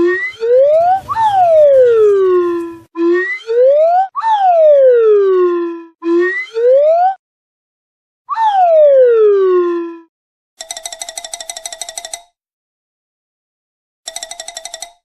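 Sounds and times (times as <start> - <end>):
siren wailing: 0.0 - 7.2, 8.3 - 10.1.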